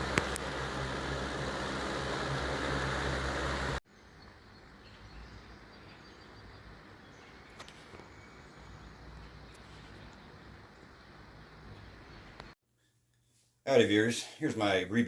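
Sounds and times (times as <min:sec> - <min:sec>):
electric fan running: 0:00.0 - 0:03.8.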